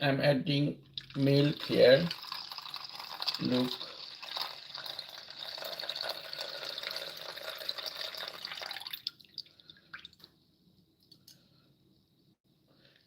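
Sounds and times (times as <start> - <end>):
milk pouring: 0.9 - 10.3.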